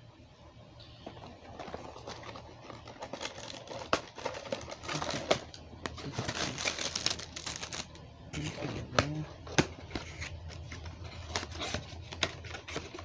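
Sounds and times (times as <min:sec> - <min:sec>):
plastic crinkling and rustling: 0:01.0 - 0:13.0.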